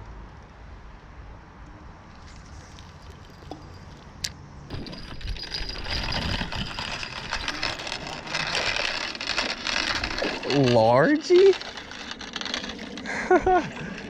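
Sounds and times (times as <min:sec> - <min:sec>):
fishing rod bell jingling: 0:02.5 - 0:13.0.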